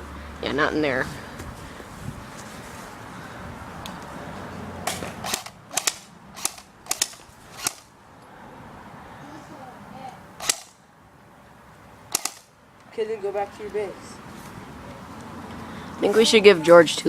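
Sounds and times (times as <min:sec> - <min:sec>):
airsoft gun firing: 0:04.9 - 0:07.9, 0:10.4 - 0:10.8, 0:12.1 - 0:12.5.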